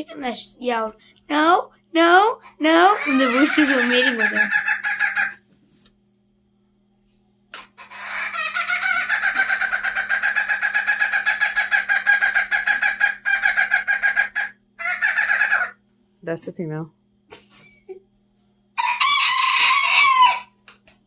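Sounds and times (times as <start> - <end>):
hen stuttering call: 2.6 - 5.4, 7.8 - 15.8.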